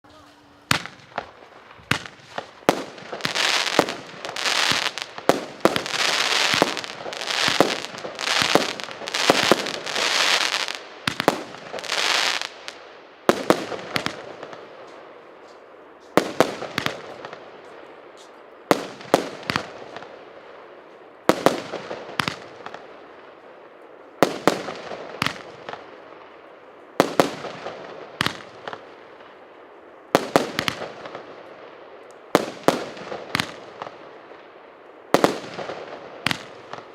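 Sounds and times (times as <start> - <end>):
fireworks battery firing: 0.2 - 12.6.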